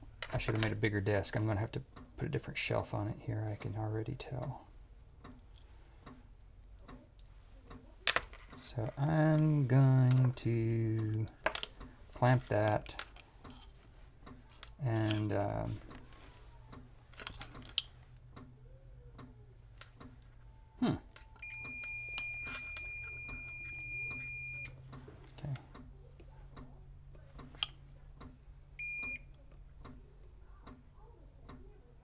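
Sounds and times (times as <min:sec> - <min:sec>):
probe and cable handling clicks: 0:05.2 - 0:18.6, 0:19.2 - 0:30.8
multimeter beeping: 0:21.2 - 0:24.8, 0:28.8 - 0:29.3.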